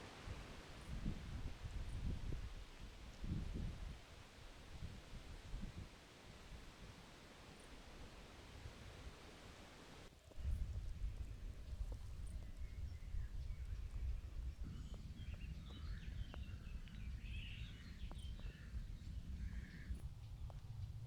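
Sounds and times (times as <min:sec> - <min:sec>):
small birds chirping: 0:11.0 - 0:21.0.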